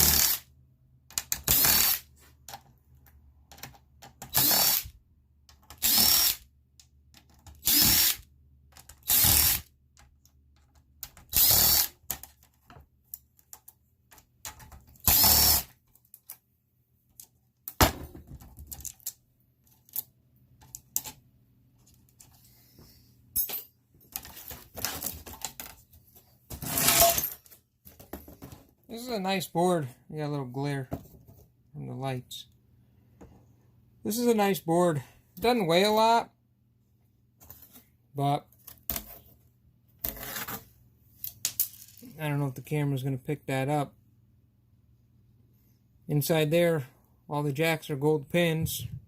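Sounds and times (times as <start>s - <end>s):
power drill whirring: 0.0s - 0.4s, 4.3s - 4.9s, 5.8s - 6.4s, 7.6s - 8.2s, 9.1s - 9.6s, 11.3s - 11.9s, 15.0s - 15.7s
metal parts clicking and rattling: 18.5s - 20.0s.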